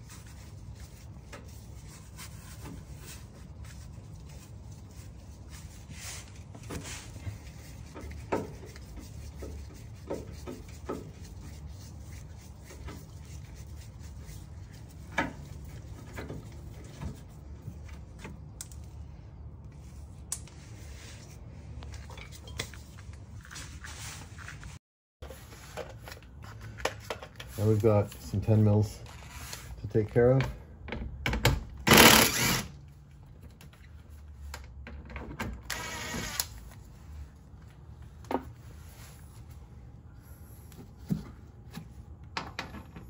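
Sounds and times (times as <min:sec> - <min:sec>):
screwdriver turning screw: 0:31.9 - 0:32.7.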